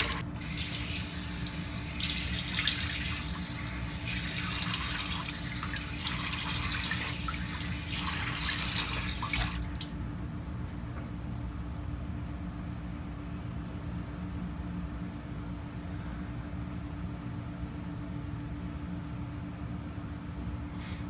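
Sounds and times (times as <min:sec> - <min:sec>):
tap running into sink: 0:00.0 - 0:09.9.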